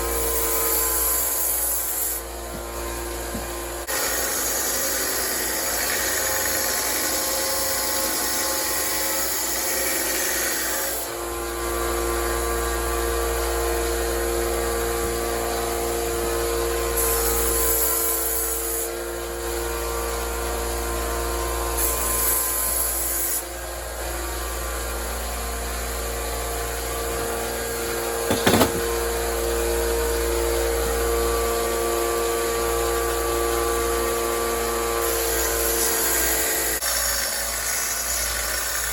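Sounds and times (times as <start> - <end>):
electric sander grinding steel: 0.0 - 38.9
sharp knock: 28.3 - 29.0.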